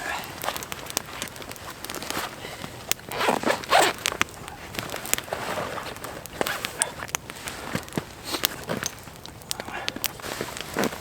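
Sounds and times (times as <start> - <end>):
zip being pulled: 3.1 - 4.0.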